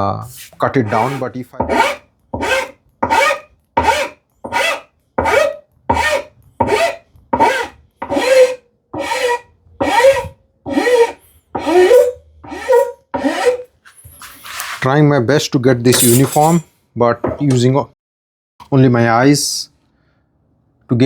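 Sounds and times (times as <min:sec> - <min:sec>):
hand tool rasping on wood: 0:00.6 - 0:13.7.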